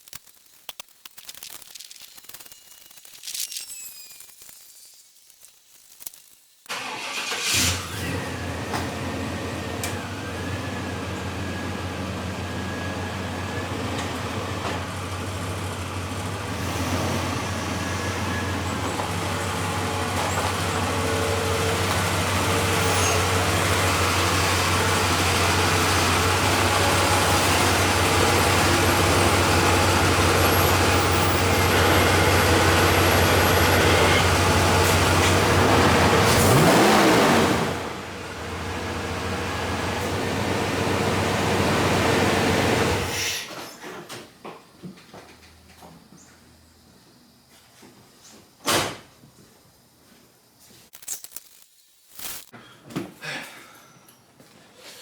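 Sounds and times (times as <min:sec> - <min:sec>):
vehicle engine humming: 0:06.7 - 0:43.2.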